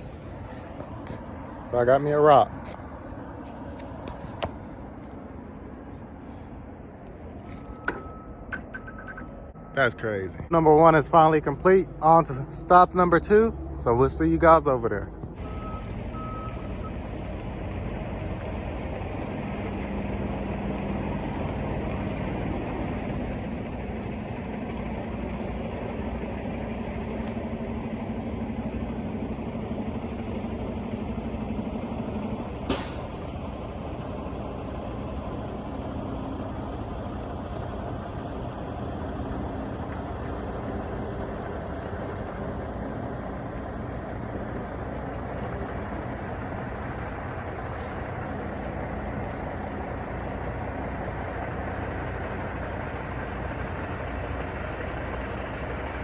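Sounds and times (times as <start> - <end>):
truck diesel engine running: 0.0 - 56.0
air brake hiss: 32.6 - 33.2.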